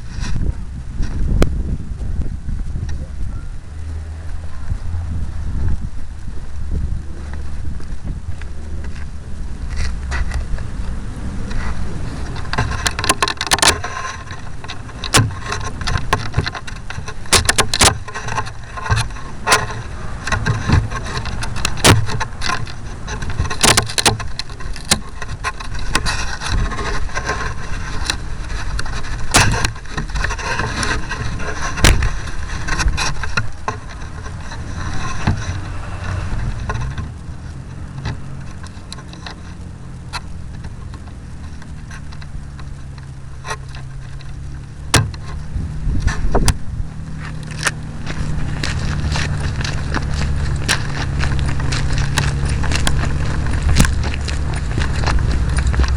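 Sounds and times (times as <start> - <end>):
sharp knocks and rattles: 11.4 - 55.9
rushing air: 24.2 - 39.0.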